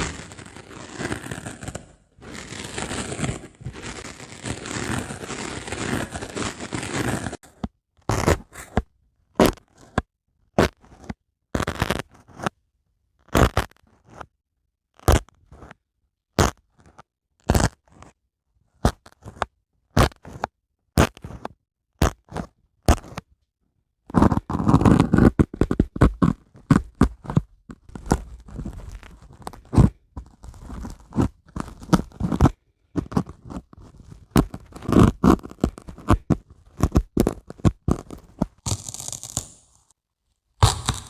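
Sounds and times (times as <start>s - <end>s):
dry sponge rubbing: 0.0s - 7.4s, 8.4s - 8.8s
sponge scratching strokes: 0.0s - 7.4s, 8.2s - 8.8s, 40.6s - 41.0s.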